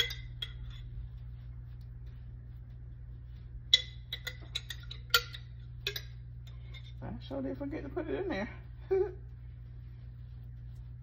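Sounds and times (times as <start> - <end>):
metal utensil clinking on dish: 0.0 - 0.9, 3.7 - 7.0
steady low hum: 0.0 - 11.0.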